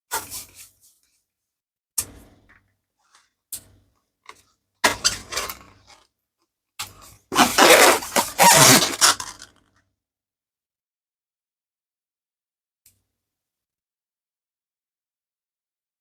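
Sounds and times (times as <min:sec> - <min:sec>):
balloons popping: 0:07.4 - 0:09.4.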